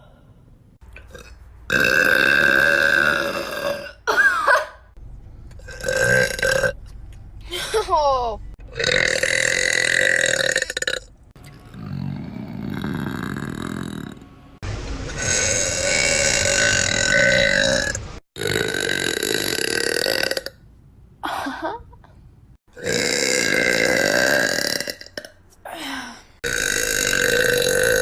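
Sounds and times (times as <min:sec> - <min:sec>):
woman burping: 0:01.0 - 0:04.8.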